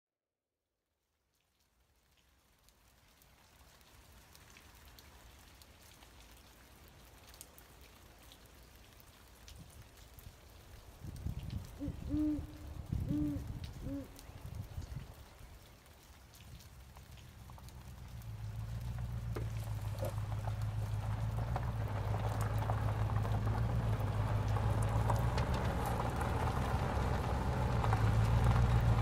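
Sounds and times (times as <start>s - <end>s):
owl hooting: 11.8s - 14.2s
light ticks: 13.4s - 29.0s.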